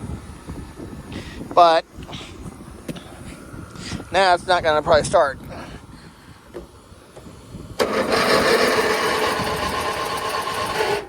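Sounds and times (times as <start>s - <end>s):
starter motor cranking engine: 7.7s - 11.0s.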